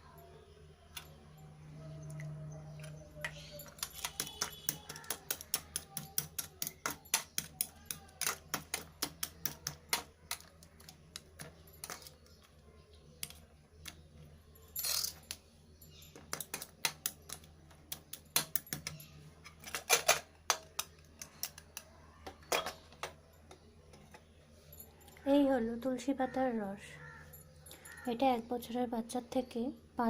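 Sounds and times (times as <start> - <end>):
kitchen utensils clinking: 2.1 - 12.4, 18.3 - 24.2.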